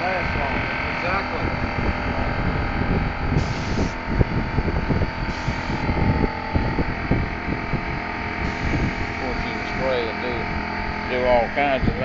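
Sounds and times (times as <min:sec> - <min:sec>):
steady low rumble: 0:00.0 - 0:12.0
sprayer hissing: 0:03.4 - 0:04.0, 0:05.3 - 0:06.2, 0:08.4 - 0:10.3.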